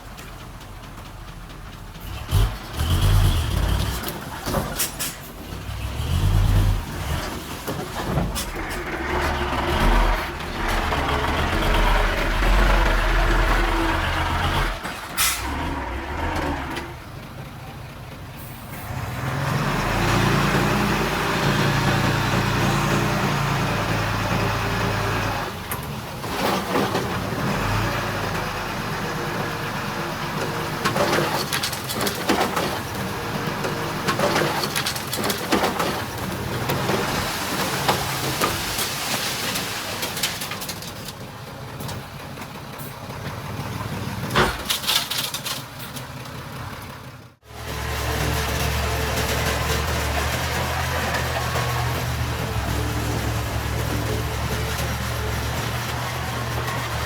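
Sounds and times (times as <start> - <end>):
diesel engines working: 0.0 - 57.0.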